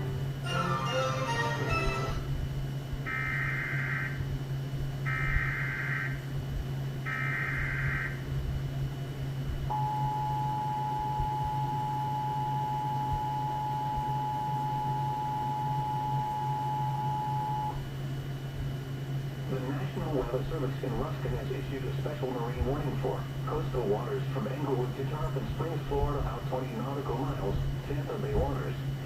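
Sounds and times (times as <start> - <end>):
low hum: 0.0 - 29.0
two-tone attention signal: 9.7 - 17.8.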